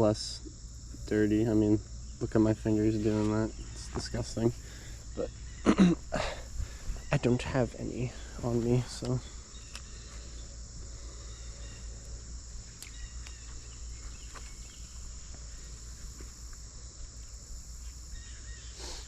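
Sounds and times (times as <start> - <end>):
low steady rumble: 0.0 - 18.2
crickets chirring: 0.0 - 19.0
faint ticks: 9.0 - 9.9.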